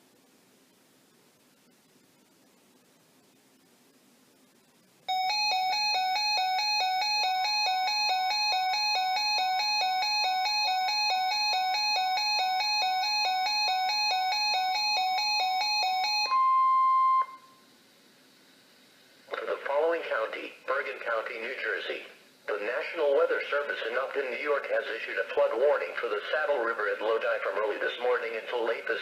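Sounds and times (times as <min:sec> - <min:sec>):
electronic alarm beeping rapidly: 0:05.1 - 0:17.5.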